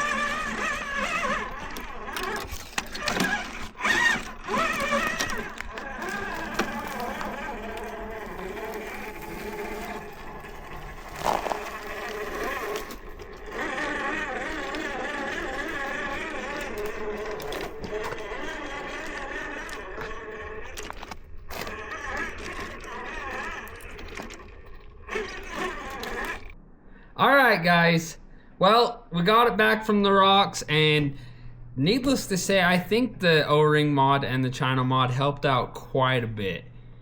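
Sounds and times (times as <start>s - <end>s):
toy crawler motor whining: 0.0s - 26.6s.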